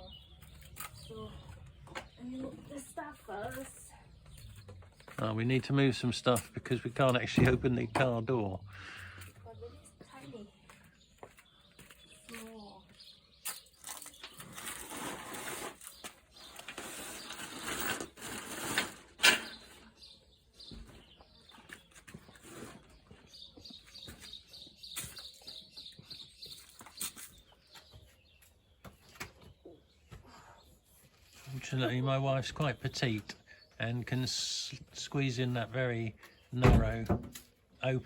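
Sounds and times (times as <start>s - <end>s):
bird chirping: 0.0s - 14.8s, 19.4s - 38.0s
objects rustling and scraping: 13.6s - 25.5s.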